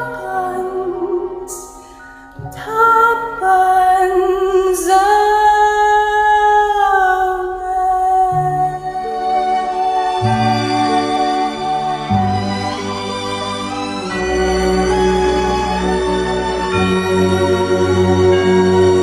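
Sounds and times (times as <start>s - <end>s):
woman singing slow song: 0.0s - 12.8s
soft musical accompaniment: 0.0s - 19.0s.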